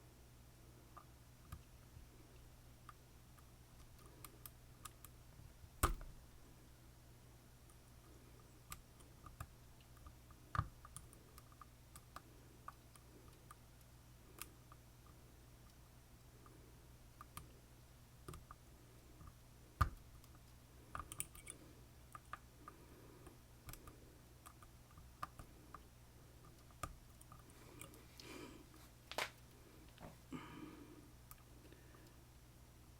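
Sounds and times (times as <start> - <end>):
lock picking tools clicking: 21.0 - 21.6.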